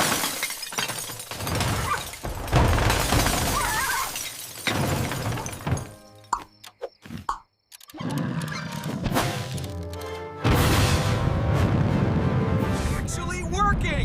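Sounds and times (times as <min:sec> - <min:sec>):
cartoon crash and shatter: 0:00.0 - 0:05.8, 0:10.4 - 0:11.3.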